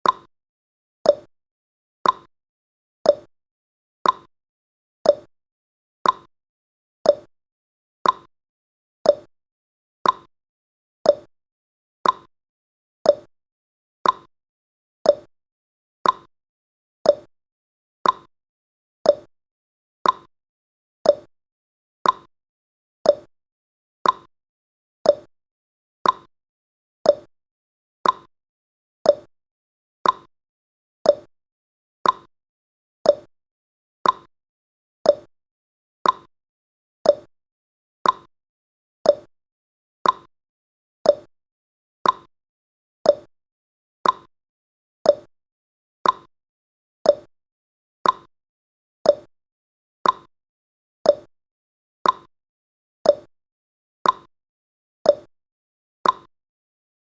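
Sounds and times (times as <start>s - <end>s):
clock ticking: 34.0s - 34.3s, 40.0s - 40.3s, 42.0s - 42.3s, 44.0s - 44.3s, 56.0s - 56.3s.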